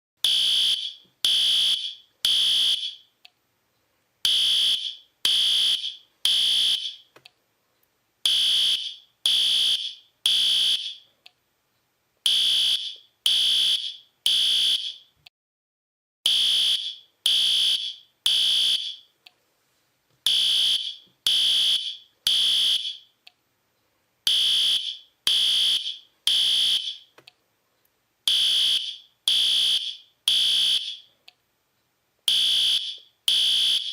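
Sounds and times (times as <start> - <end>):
fire alarm beeps: 0.2 - 3.1, 12.3 - 15.1, 16.3 - 19.1, 20.3 - 23.1, 24.3 - 27.1, 28.3 - 31.1, 32.3 - 33.9.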